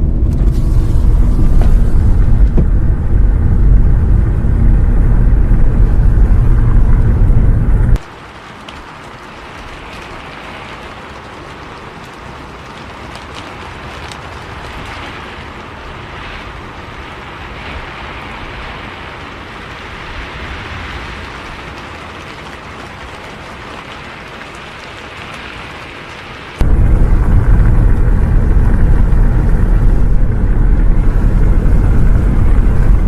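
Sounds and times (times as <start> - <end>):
bus rumble: 0.0 - 8.0, 26.6 - 33.0
rain hissing: 0.0 - 33.0
raindrop ticks: 0.0 - 33.0.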